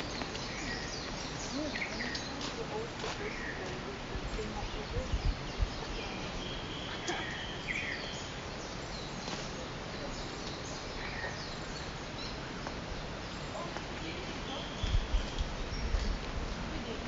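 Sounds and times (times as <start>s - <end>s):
outdoor background noise: 0.0s - 17.0s
bird chirps: 4.6s - 13.7s.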